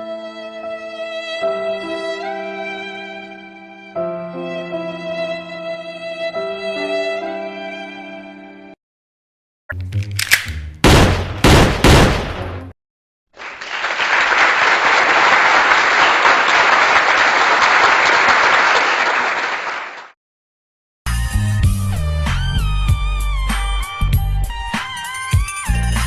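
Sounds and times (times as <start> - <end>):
loud sharp hits: 10.8 - 12.7
crowd applause: 13.4 - 20.2.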